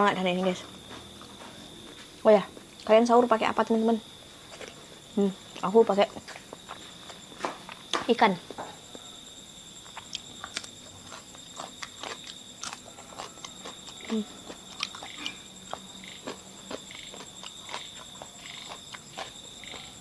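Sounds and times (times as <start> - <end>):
crickets chirring: 0.0 - 20.0
chewing and biting: 9.8 - 20.0.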